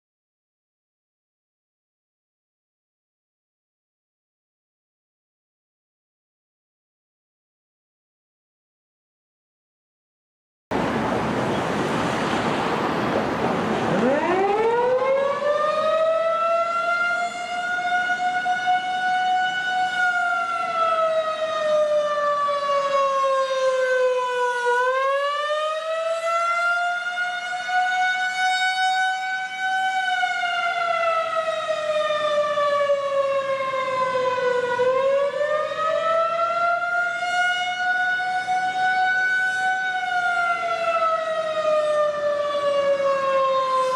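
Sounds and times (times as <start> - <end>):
tornado siren wailing: 10.8 - 43.9.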